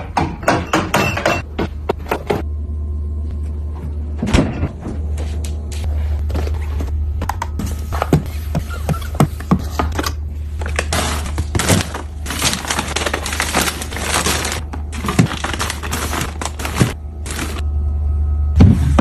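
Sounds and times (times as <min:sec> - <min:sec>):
steady low hum: 0:00.0 - 0:19.0
items clicking and knocking: 0:07.2 - 0:17.6
packaging rustling and crinkling: 0:10.5 - 0:17.7.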